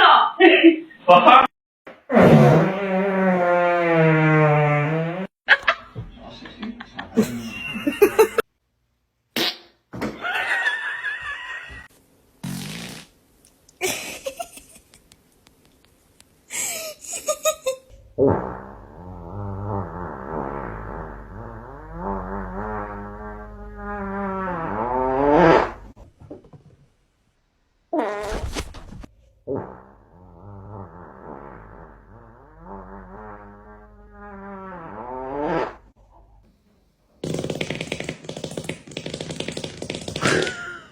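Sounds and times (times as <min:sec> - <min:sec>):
farting: 0:02.0 - 0:05.3, 0:09.4 - 0:09.8, 0:12.4 - 0:13.2, 0:18.2 - 0:26.0, 0:27.9 - 0:36.0, 0:37.2 - 0:40.7.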